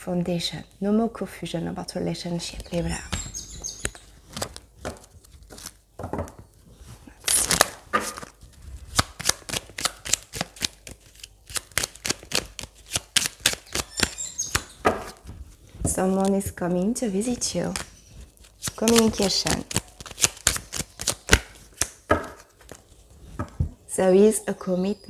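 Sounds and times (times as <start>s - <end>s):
cards being shuffled: 2.5s - 5.8s, 7.1s - 23.7s.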